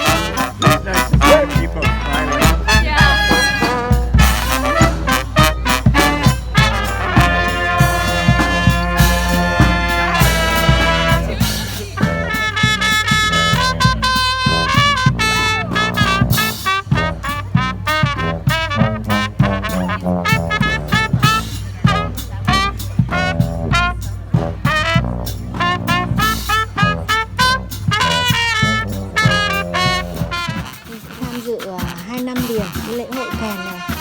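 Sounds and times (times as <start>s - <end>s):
brass band swing music: 0.0s - 34.0s.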